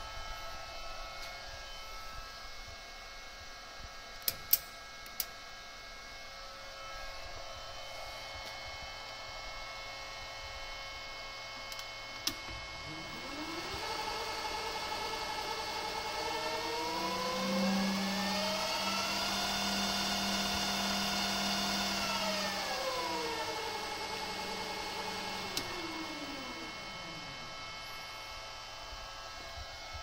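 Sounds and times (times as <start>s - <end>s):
lathe motor whine: 6.5s - 30.0s.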